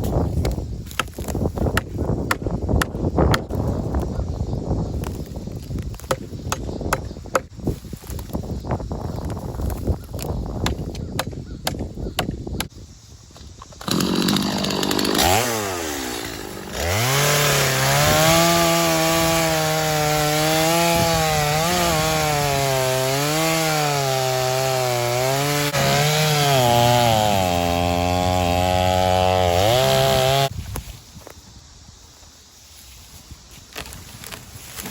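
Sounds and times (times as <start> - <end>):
chainsaw cutting wood: 13.7 - 30.5.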